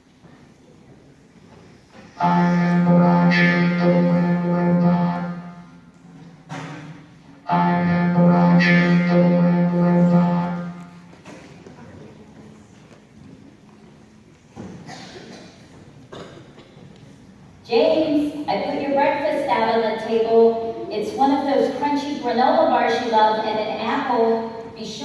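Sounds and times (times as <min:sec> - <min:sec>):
low buzzing drone notes: 0:02.2 - 0:06.2, 0:07.0 - 0:11.1.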